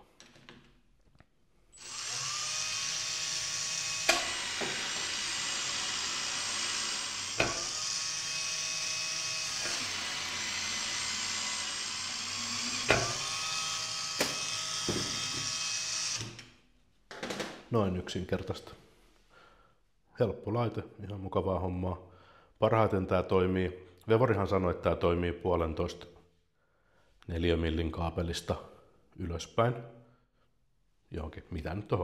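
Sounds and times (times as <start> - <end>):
electric drill running: 1.7 - 16.4.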